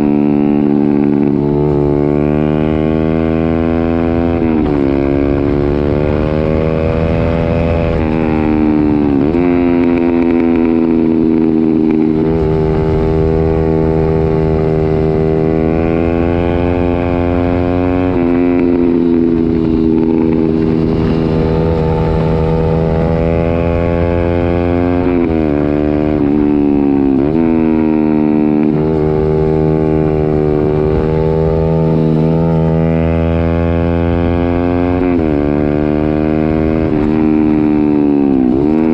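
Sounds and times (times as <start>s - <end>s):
loud motorcycle engine revving: 0.0s - 38.9s.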